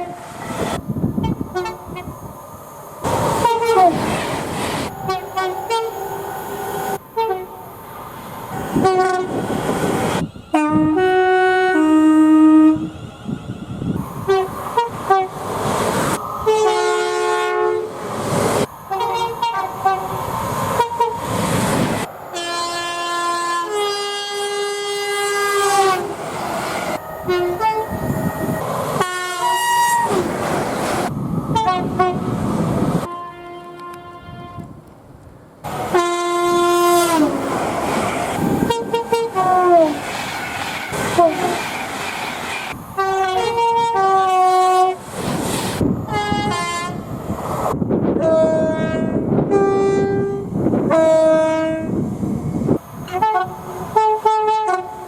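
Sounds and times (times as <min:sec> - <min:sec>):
passing trains rumbling: 0:00.0 - 0:55.0
train horn blasts: 0:01.2 - 0:02.1, 0:03.4 - 0:04.0, 0:05.0 - 0:06.0, 0:07.2 - 0:07.6, 0:08.8 - 0:09.4, 0:10.5 - 0:12.9, 0:14.3 - 0:15.4, 0:16.4 - 0:17.9, 0:18.9 - 0:20.1, 0:20.8 - 0:21.2, 0:22.3 - 0:26.1, 0:27.2 - 0:30.2, 0:31.5 - 0:32.3, 0:33.0 - 0:34.7, 0:35.9 - 0:37.5, 0:38.6 - 0:40.0, 0:41.1 - 0:41.6, 0:43.0 - 0:45.0, 0:46.1 - 0:47.0, 0:48.2 - 0:52.0, 0:53.0 - 0:55.0.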